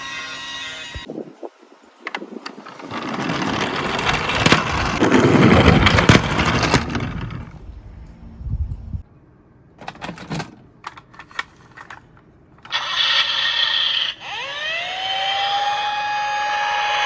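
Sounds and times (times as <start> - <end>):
toy cars clicking and clattering: 2.4 - 7.5, 9.8 - 14.2.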